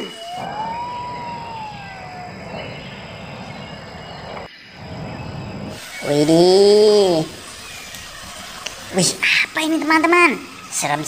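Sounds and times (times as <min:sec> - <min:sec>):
whistle-like tone: 0:00.0 - 0:04.5.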